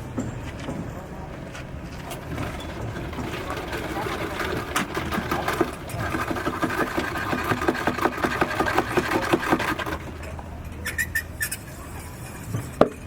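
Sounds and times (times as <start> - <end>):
machine rattling: 1.8 - 11.0.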